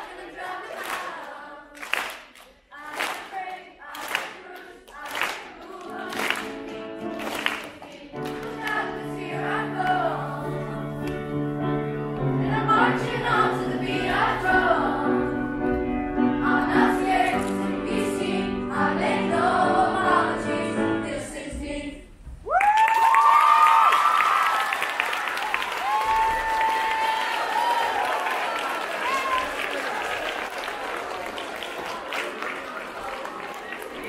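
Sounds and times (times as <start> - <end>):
choir singing: 0.0 - 22.1
sharp claps: 1.8 - 3.3.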